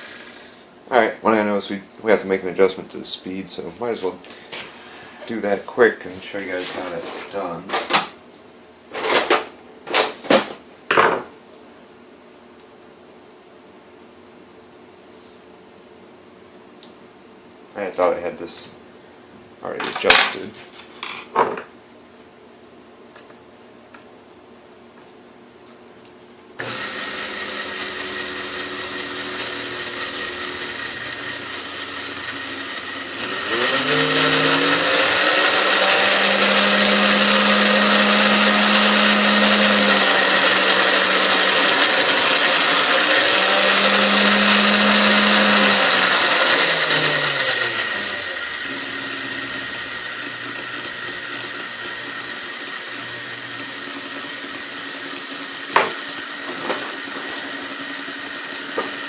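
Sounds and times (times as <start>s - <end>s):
stand mixer motor running: 0.0s - 0.5s, 26.6s - 59.0s.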